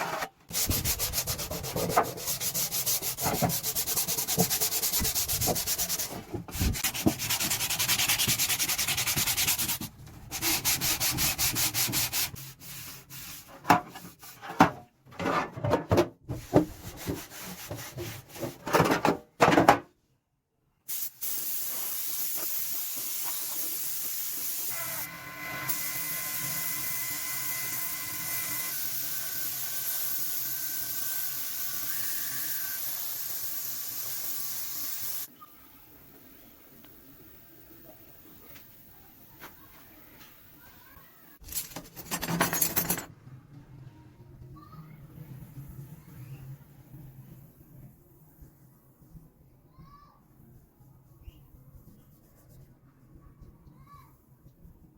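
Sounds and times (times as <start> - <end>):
hand sanding metal: 0.5 - 13.6.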